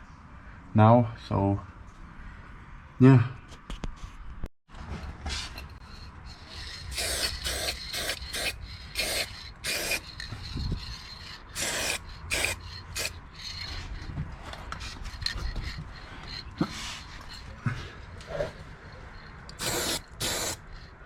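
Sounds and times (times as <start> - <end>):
spray paint can hissing: 5.8 - 13.9, 19.5 - 20.7.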